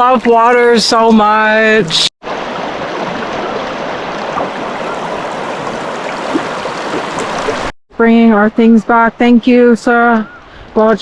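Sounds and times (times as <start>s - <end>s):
river water flowing: 2.2s - 7.8s.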